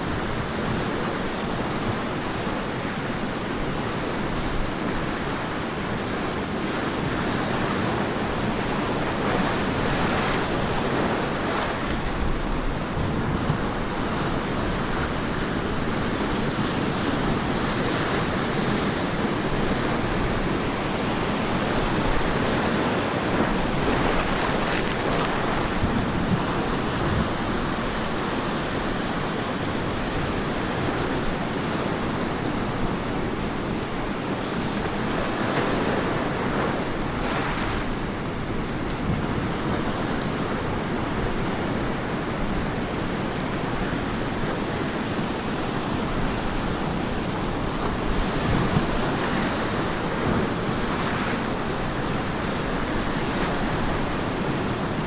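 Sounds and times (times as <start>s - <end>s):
ocean surf breaking on beach: 0.0s - 55.0s.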